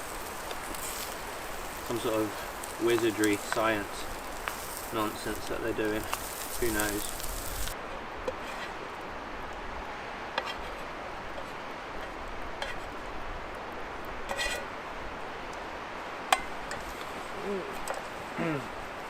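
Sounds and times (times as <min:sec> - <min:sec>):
steady outdoor hiss: 0:00.0 - 0:19.0.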